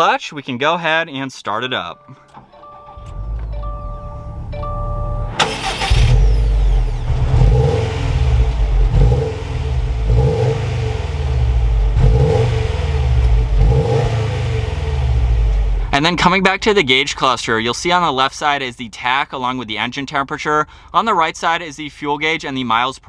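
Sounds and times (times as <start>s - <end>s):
steady beeping tones: 2.7s - 5.4s
car engine starting and revving: 2.7s - 16.2s.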